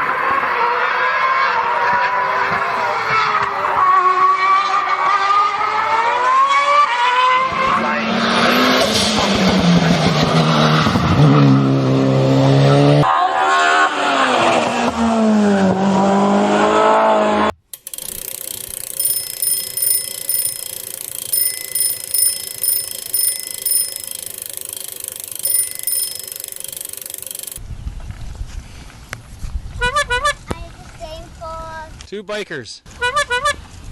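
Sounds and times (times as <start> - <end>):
short high beeps: 17.8 - 27.6.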